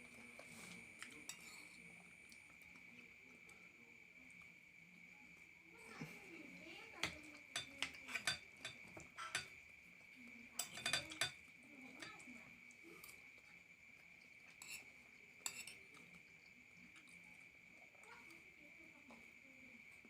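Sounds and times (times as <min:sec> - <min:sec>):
cutlery clinking on a plate: 0:01.2 - 0:01.8, 0:07.0 - 0:09.6, 0:10.6 - 0:11.4, 0:14.5 - 0:15.8.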